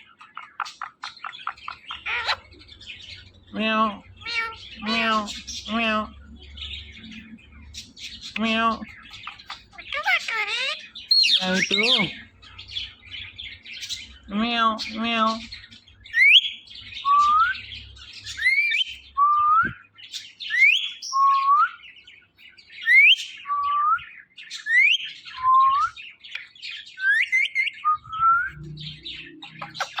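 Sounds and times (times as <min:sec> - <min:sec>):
parrot soft scratchy chatter: 0:00.6 - 0:02.5, 0:04.2 - 0:05.9, 0:09.0 - 0:12.0, 0:29.5 - 0:30.0.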